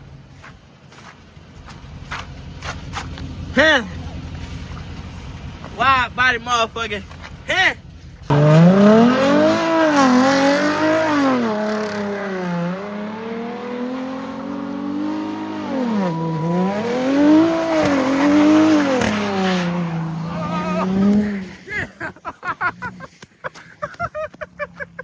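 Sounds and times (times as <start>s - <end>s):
car engine revving: 1.4s - 21.9s.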